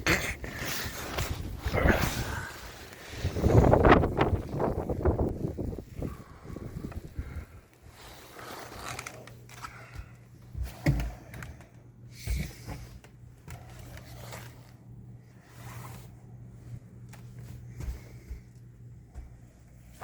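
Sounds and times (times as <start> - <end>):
steady low hum: 0.0 - 20.0
blizzard wind gusting: 0.9 - 8.2.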